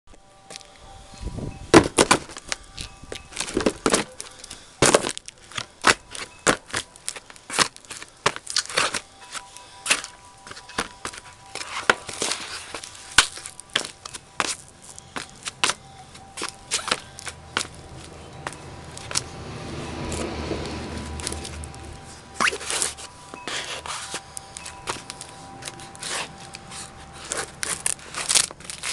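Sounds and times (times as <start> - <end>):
cardboard box crushed underfoot: 3.4 - 9.0.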